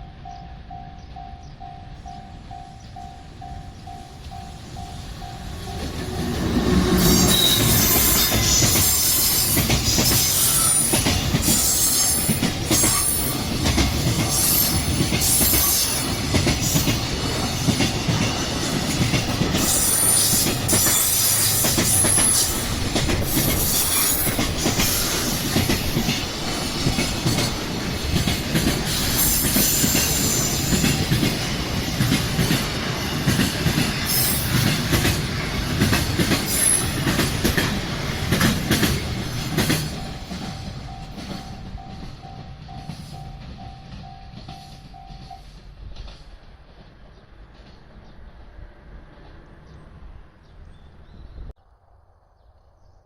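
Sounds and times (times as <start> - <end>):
train wheels rumbling on rail: 0.0 - 51.5
high-pitched wheel squeals: 6.8 - 13.3.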